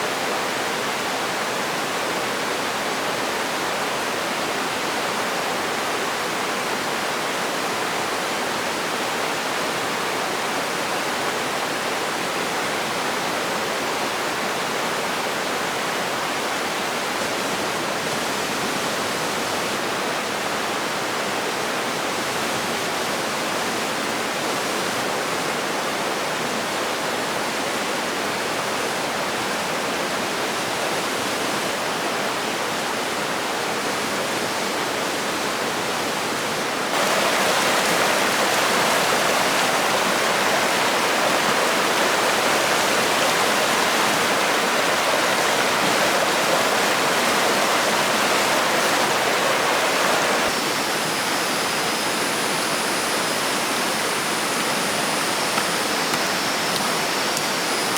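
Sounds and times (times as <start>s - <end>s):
running water rushing: 35.2s - 57.9s.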